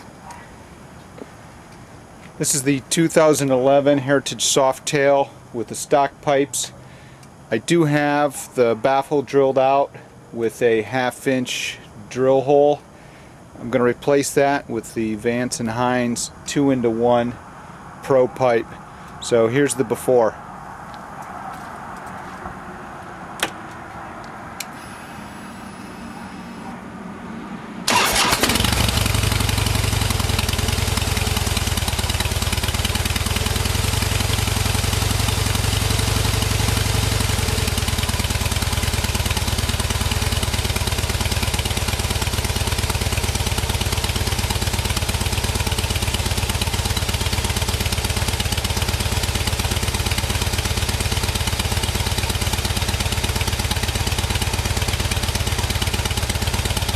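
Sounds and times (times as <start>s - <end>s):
faint whine: 23.8s - 27.9s
motorcycle engine idling: 27.9s - 56.9s.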